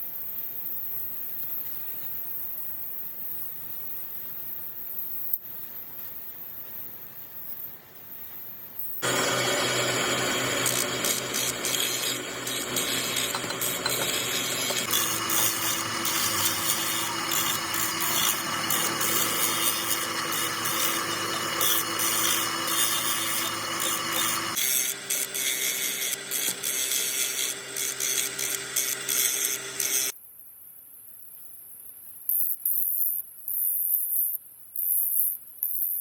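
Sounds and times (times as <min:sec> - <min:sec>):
power tool on metal: 0:09.0 - 0:30.1
steady whine: 0:09.0 - 0:30.1.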